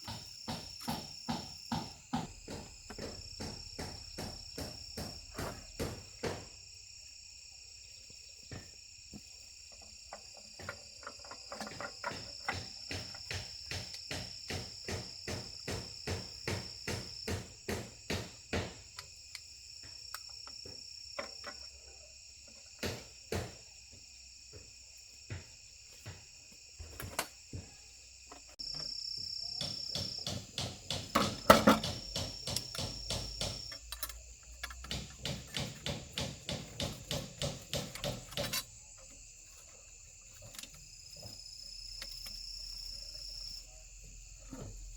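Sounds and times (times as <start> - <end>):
hammer tapping on workpiece: 0.0 - 6.5, 11.6 - 19.1, 29.4 - 38.7
loud knocks: 0.0 - 6.5, 11.7 - 18.8, 29.6 - 33.9, 34.7 - 38.7
insects chirring: 0.0 - 44.9.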